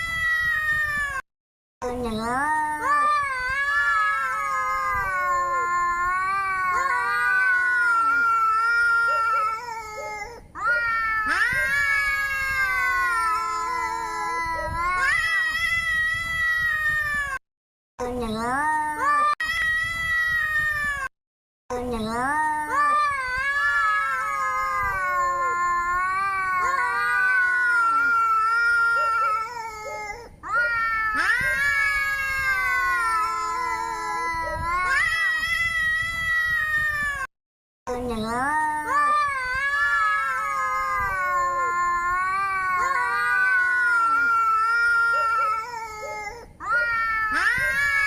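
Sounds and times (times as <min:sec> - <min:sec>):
cat yowling angrily: 0:23.4 - 0:37.3, 0:39.2 - 0:48.0.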